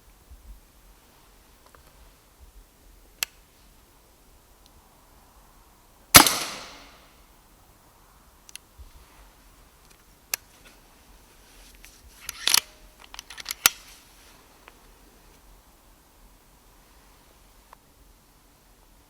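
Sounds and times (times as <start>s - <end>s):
air rifle shot crack: 6.2s - 7.1s
rifle handling clicks and knocks: 11.7s - 14.1s.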